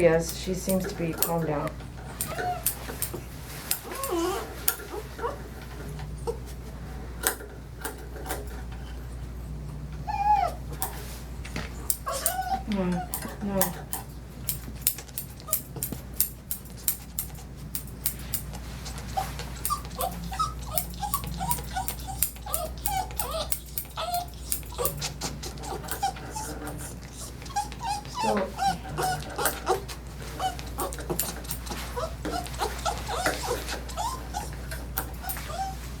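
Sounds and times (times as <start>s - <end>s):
small dog whining: 2.0s - 6.6s, 8.3s - 11.1s, 11.7s - 14.1s, 18.3s - 36.0s.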